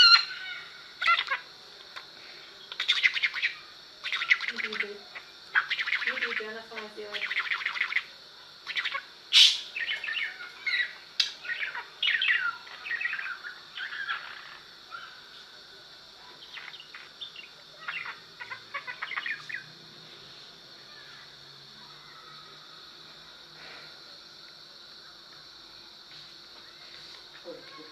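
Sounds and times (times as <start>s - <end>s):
parrot squawk: 0.0s - 1.5s, 7.1s - 15.2s, 16.5s - 19.6s
parrot chirping and chattering: 0.0s - 2.1s, 2.7s - 15.4s, 16.2s - 19.8s.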